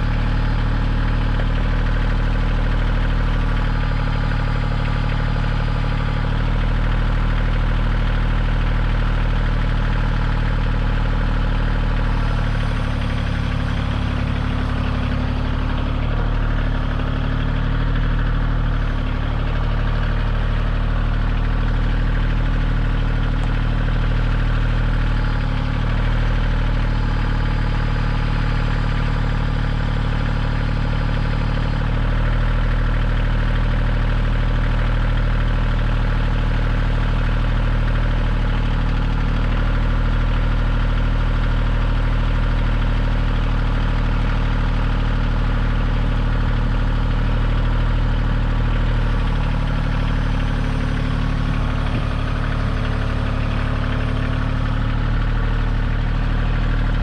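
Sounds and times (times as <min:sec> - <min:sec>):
tractor diesel engine running: 0:00.0 - 0:57.0.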